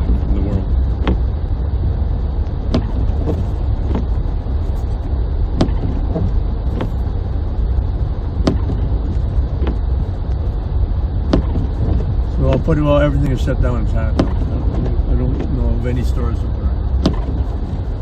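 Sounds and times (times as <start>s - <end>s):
car engine and tyres rumbling: 0.0s - 18.0s.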